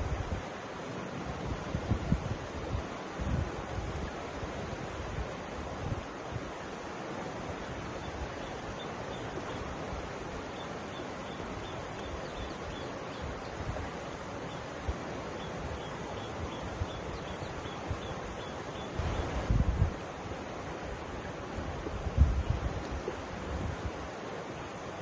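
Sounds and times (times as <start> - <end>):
wind on microphone: 0.0 - 6.6, 11.4 - 24.2
river water rushing: 0.0 - 25.0.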